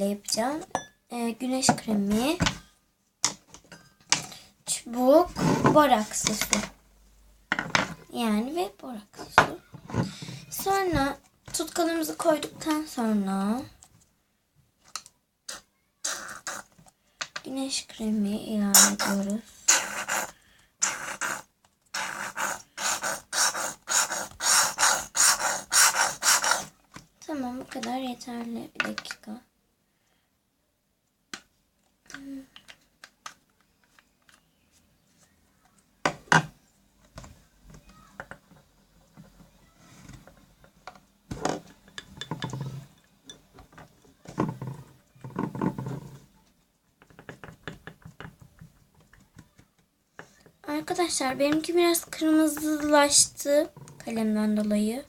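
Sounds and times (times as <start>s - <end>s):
pen stirring sticky slime: 15.5s - 16.8s, 18.8s - 26.8s.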